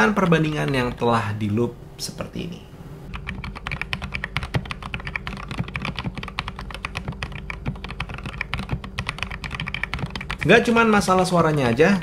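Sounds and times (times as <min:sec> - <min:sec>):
fast typing on mechanical keyboard: 0:00.0 - 0:01.0, 0:03.1 - 0:12.0.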